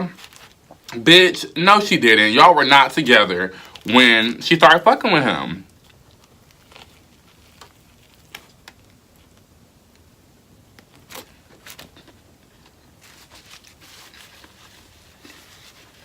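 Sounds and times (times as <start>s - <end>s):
soft rustle: 0.0s - 1.0s, 5.7s - 10.1s, 10.7s - 16.0s
soft chewing: 5.7s - 10.1s.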